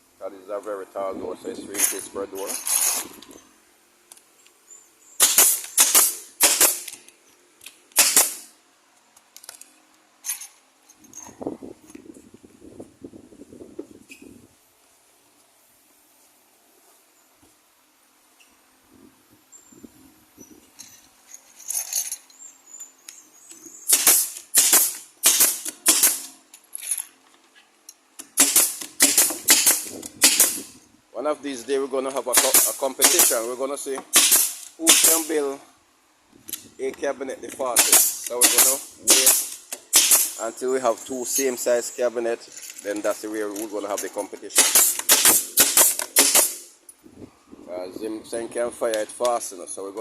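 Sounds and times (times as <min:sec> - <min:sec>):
nail gun shots: 0:05.2 - 0:07.0, 0:07.9 - 0:08.5, 0:23.9 - 0:26.4, 0:28.2 - 0:30.7, 0:32.3 - 0:33.5, 0:34.1 - 0:35.4, 0:37.7 - 0:40.4, 0:44.5 - 0:46.7.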